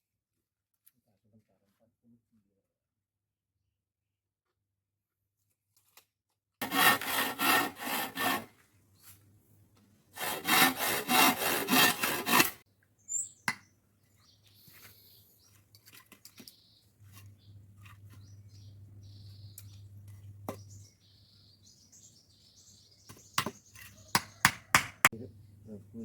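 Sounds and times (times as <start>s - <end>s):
hand saw cutting wood: 6.6s - 8.6s, 10.1s - 12.6s.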